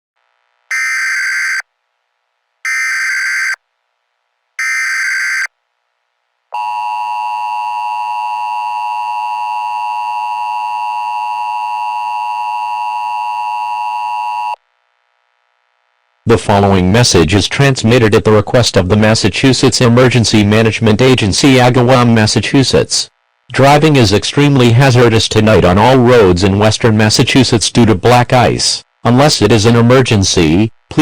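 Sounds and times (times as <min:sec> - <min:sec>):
screechy data tone blasts: 0:00.7 - 0:01.6, 0:02.7 - 0:03.6, 0:04.6 - 0:05.5
two-tone attention signal: 0:00.7 - 0:01.6, 0:02.7 - 0:03.6, 0:04.6 - 0:05.5.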